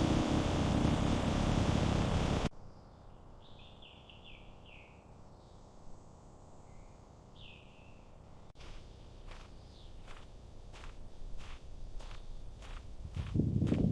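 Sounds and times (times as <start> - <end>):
loud rushing noise: 0.0 - 2.5.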